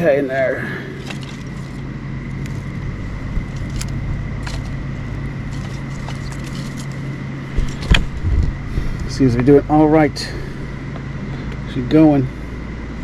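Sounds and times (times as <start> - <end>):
campfire crackling: 0.0 - 9.5
low mechanical hum: 0.0 - 13.0.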